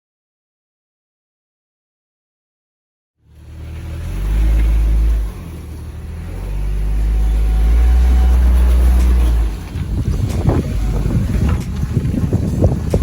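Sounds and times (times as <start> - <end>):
engine droning under load: 3.2 - 13.0.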